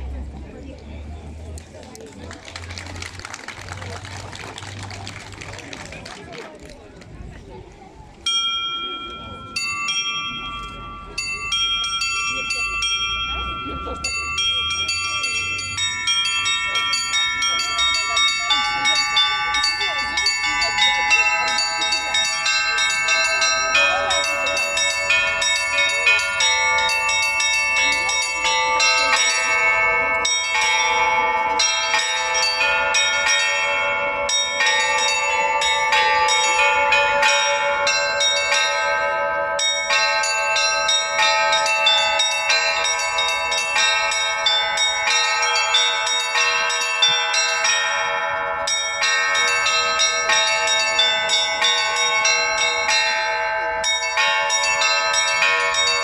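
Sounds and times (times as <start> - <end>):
church bells pealing: 8.2 - 56.0.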